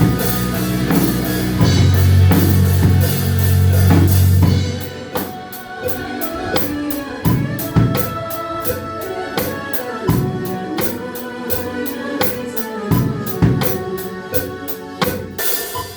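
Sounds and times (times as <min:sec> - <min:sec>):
bass drum hits: 0:00.0 - 0:05.0
sustained melody notes: 0:00.0 - 0:06.2.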